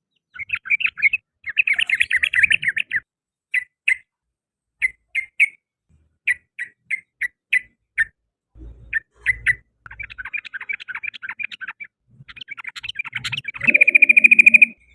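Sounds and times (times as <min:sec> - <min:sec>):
bird chattering song: 0:00.1 - 0:04.1, 0:04.8 - 0:05.6, 0:06.2 - 0:08.2, 0:08.8 - 0:14.9
bird chip notes: 0:13.6 - 0:14.9.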